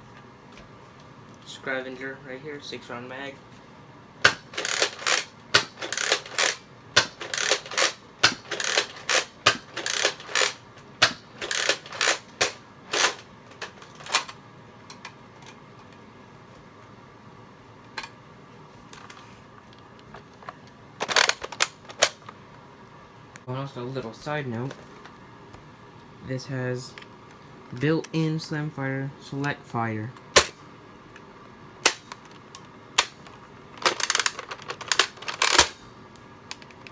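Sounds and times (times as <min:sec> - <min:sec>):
sharp plastic clacks: 0:04.2 - 0:16.0, 0:19.0 - 0:22.4, 0:30.2 - 0:35.8
foam dart blaster pumping and firing: 0:04.3 - 0:13.2.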